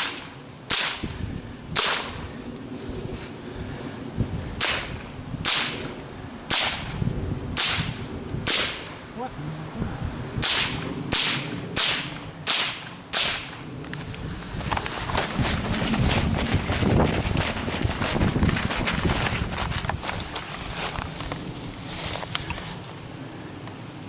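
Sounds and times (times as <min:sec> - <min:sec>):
rifle shots: 0:04.6 - 0:05.9, 0:06.5 - 0:07.0, 0:07.6 - 0:09.0, 0:10.4 - 0:13.6.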